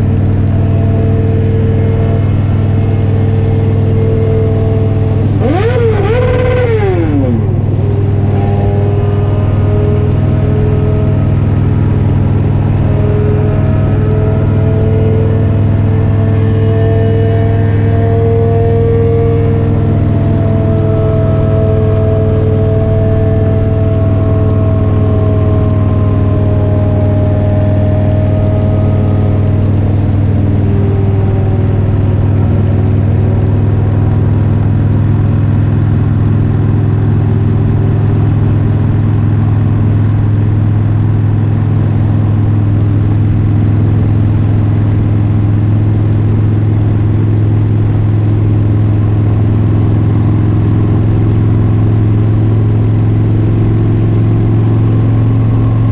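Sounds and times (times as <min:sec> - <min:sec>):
motorcycle engine cruising: 0:00.0 - 0:55.9
high whine sliding down: 0:00.9 - 0:34.4.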